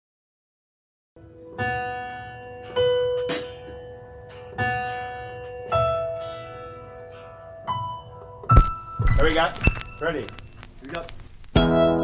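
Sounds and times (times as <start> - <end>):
keyboard chords ringing: 1.2 - 10.5, 11.6 - 12.0
held keyboard note: 11.5 - 12.0.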